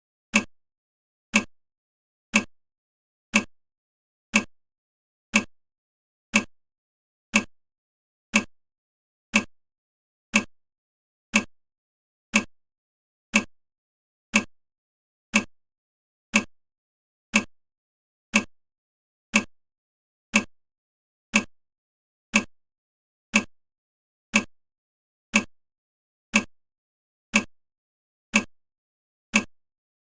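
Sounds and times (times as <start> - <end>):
countdown timer ticking: 0.3 - 0.5, 6.3 - 6.5, 7.3 - 7.5, 13.3 - 13.5, 21.3 - 21.5, 26.3 - 26.5, 27.3 - 27.5, 28.3 - 28.5, 29.3 - 29.6.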